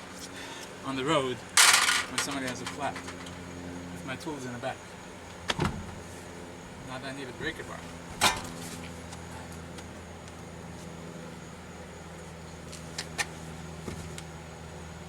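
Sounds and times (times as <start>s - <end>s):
steady low hum: 0.0s - 15.0s
metal tools clinking: 1.6s - 3.4s.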